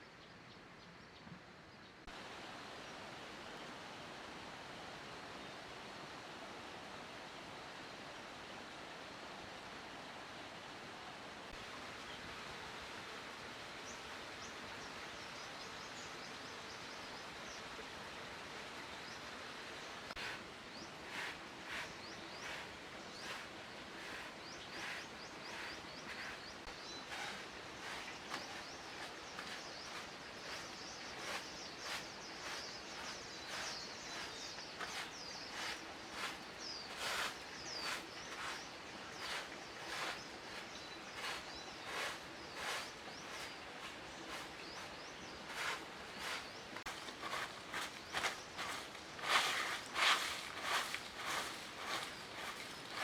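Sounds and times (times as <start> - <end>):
small birds chirping: 18.8 - 53.0
rustling in dry vegetation: 19.8 - 53.0.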